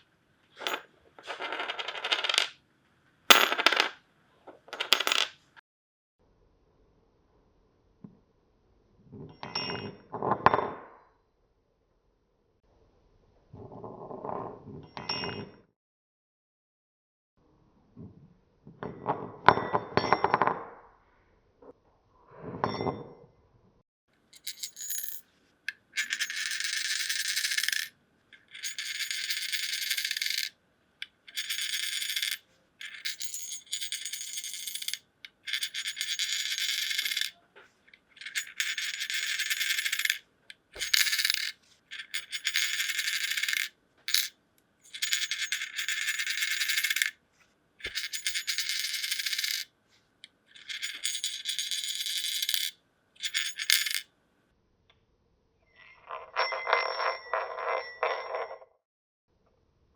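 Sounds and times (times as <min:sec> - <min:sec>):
metal ring spinning: 0:31.3 - 0:37.4, 0:38.2 - 0:40.2, 0:40.8 - 0:44.3, 0:44.9 - 0:47.2, 0:47.8 - 0:49.7, 0:50.5 - 0:54.0, 0:56.0 - 0:58.7.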